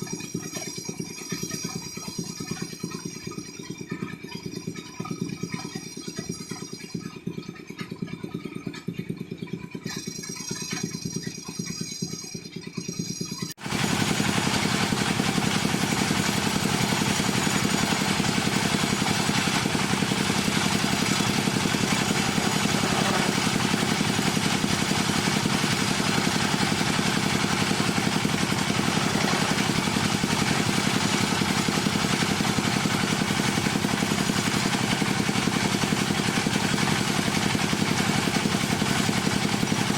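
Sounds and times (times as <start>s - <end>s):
loud machine cutting hiss: 13.6s - 35.7s
woodworking machine hum with whine: 13.6s - 39.9s.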